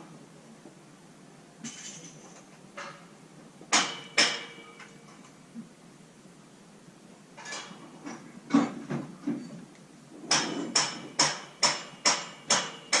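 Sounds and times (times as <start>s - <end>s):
hammer striking metal scaffolding: 3.7s - 5.0s, 10.3s - 13.0s.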